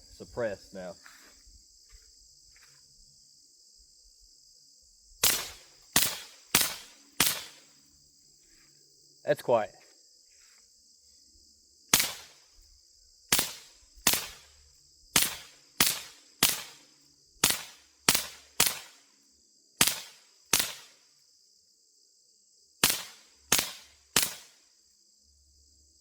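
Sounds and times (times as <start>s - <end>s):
insect chirring: 0.0s - 26.0s
person talking: 0.1s - 1.0s, 9.3s - 9.8s
suppressed pistol shots: 5.2s - 7.7s, 11.9s - 12.4s, 13.3s - 14.6s, 15.2s - 19.1s, 19.8s - 21.0s, 22.8s - 24.6s.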